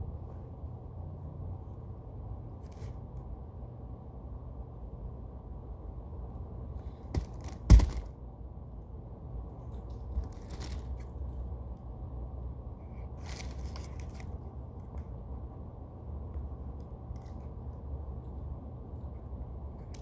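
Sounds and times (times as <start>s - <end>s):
steady low hum: 0.0s - 20.0s
scissors cutting foam: 7.0s - 8.1s.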